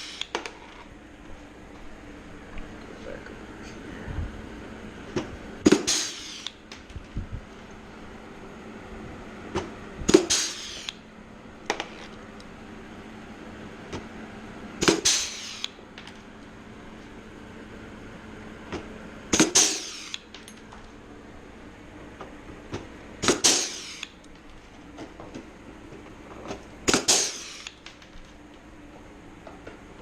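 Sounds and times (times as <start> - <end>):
rivet puller snapping with hiss: 0.0 - 0.4, 5.7 - 6.6, 10.1 - 11.0, 14.8 - 15.8, 19.4 - 20.3, 23.2 - 24.2, 26.9 - 27.9.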